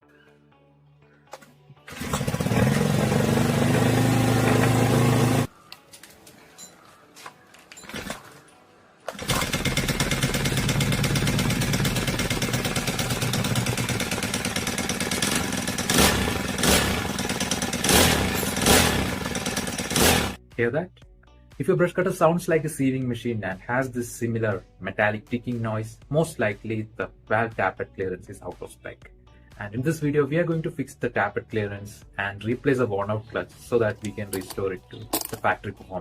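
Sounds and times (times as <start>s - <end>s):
brush cutter engine running: 1.9s - 5.5s, 9.1s - 20.4s.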